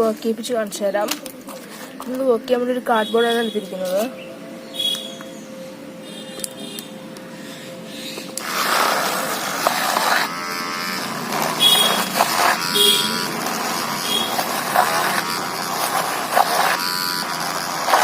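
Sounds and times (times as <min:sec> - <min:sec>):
small motor buzzing with whine: 0:04.8 - 0:18.0
drill bit grinding cardboard: 0:08.4 - 0:18.0.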